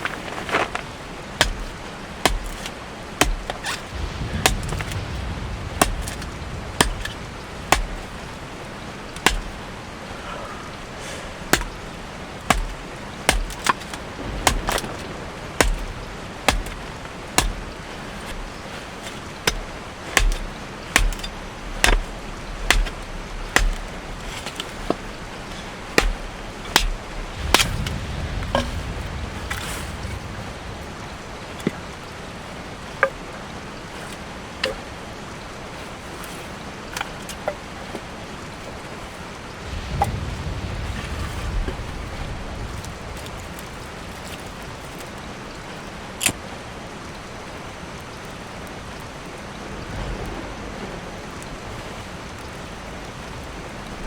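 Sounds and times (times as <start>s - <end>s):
blade chopping wood: 1.4s - 8.2s, 9.1s - 9.6s, 11.5s - 30.2s, 33.9s - 34.8s, 35.8s - 38.1s.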